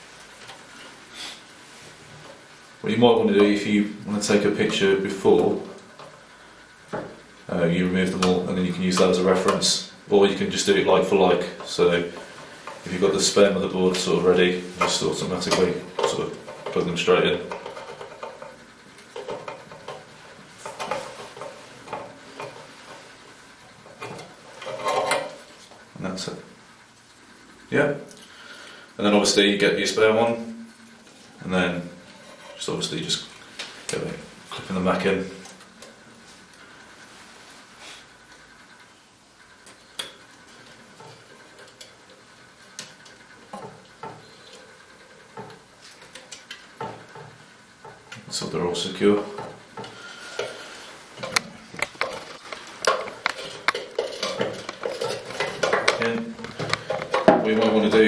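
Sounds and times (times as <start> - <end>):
wire connectors clicking: 51.2 - 58.0.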